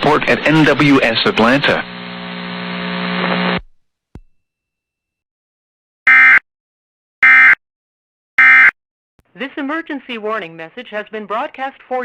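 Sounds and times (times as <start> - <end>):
emergency alert data tones: 7.2 - 7.6, 8.4 - 8.7.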